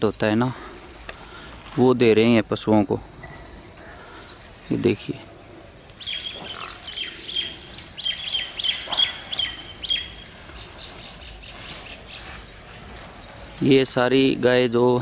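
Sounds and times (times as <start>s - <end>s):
bird chirping: 3.0s - 14.0s.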